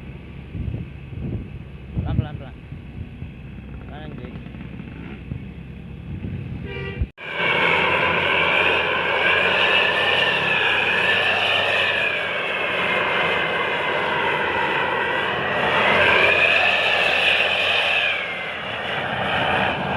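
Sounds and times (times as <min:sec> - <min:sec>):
multi-tone bus air horn: 0:06.6 - 0:07.1.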